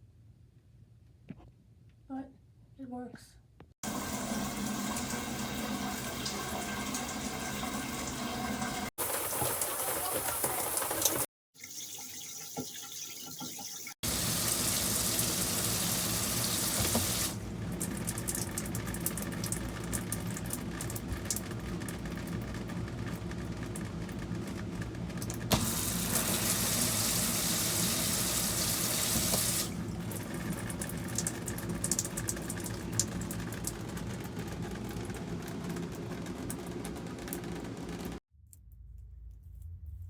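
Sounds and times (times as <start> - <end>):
shower head spraying water: 9.0 - 11.3, 14.0 - 17.4, 25.5 - 29.8.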